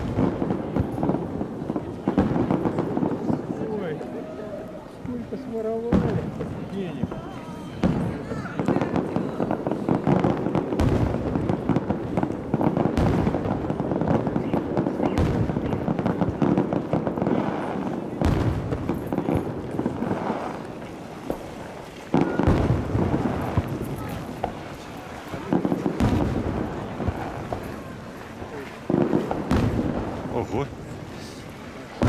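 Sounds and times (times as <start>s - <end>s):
firework shells bursting: 0.0s - 3.8s, 5.9s - 32.0s
firework crackling: 0.0s - 32.0s.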